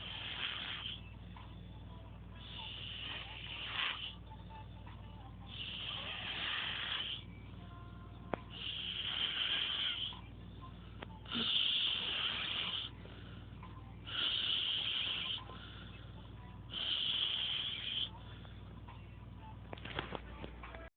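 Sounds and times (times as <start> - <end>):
snoring: 0.0 - 1.1, 2.4 - 4.2, 5.5 - 7.3, 8.5 - 10.3, 11.3 - 13.0, 14.0 - 15.5, 16.7 - 18.2.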